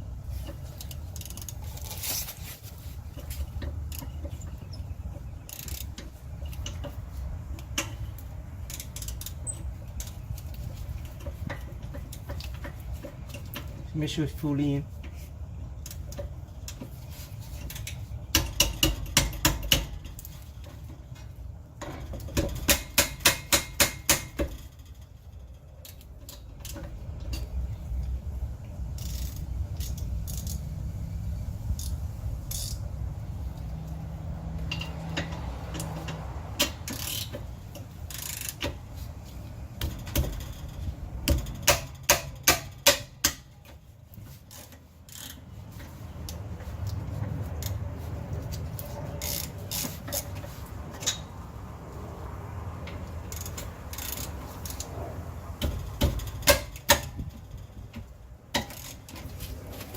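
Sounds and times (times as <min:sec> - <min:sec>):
low steady rumble: 0:00.0 - 0:59.9
ratchet wrench clicking: 0:00.4 - 0:02.2, 0:03.4 - 0:04.6, 0:05.4 - 0:13.8, 0:15.8 - 0:27.5, 0:28.9 - 0:31.0, 0:31.6 - 0:51.3, 0:52.8 - 0:54.9, 0:55.6 - 0:59.5.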